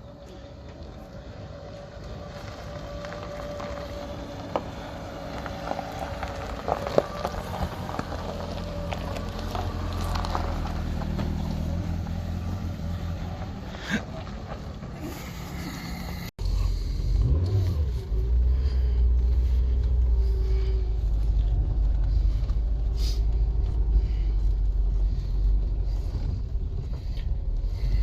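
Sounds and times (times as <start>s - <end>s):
car engine running: 0.1s - 28.0s.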